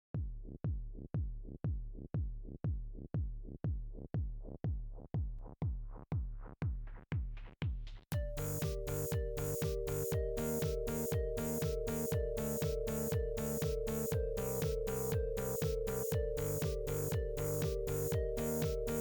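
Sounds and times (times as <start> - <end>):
kick drum: 0.0 - 19.0
electronic dance music: 8.2 - 19.0
rising synth sweep: 8.4 - 19.0.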